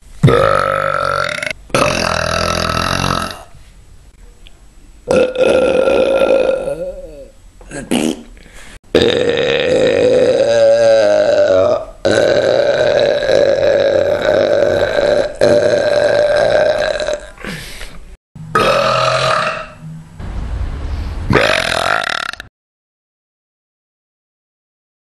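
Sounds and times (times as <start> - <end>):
man burping: 0.2 - 3.5, 5.1 - 17.6, 18.5 - 19.8, 21.3 - 22.5.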